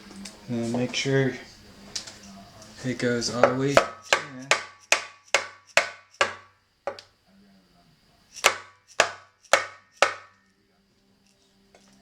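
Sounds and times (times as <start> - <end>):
mallet knocking on metal: 3.4 - 7.0, 8.4 - 10.4.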